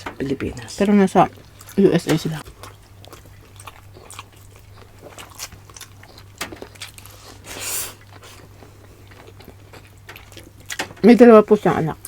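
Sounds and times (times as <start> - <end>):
biting and chewing clicks: 0.0 - 11.2
hiss: 7.4 - 8.4.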